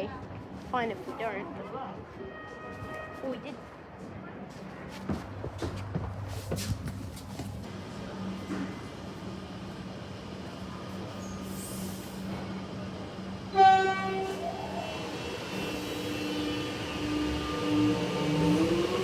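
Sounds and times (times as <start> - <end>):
train horn blast: 2.2 - 3.5, 13.5 - 14.6
electric train humming: 12.5 - 19.0.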